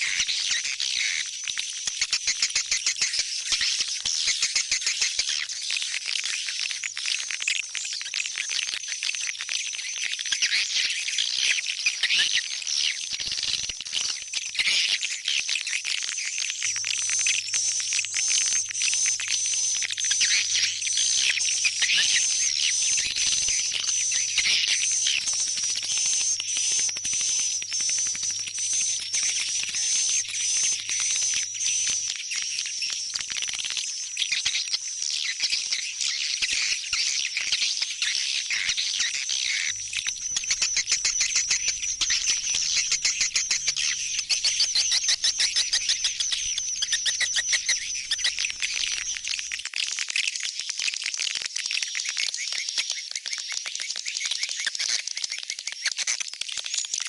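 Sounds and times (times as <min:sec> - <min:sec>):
swiftlet calls twittering: 0:16.8 - 0:32.9, 0:35.7 - 0:49.6.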